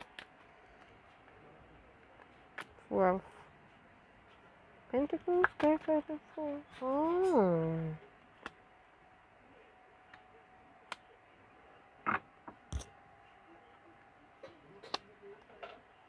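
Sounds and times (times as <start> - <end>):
cards clicking and tapping: 0.0 - 1.2.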